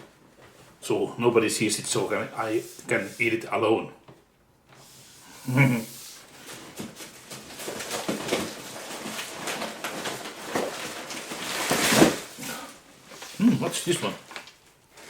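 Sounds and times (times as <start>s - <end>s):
packaging rustling and crinkling: 6.1s - 15.0s.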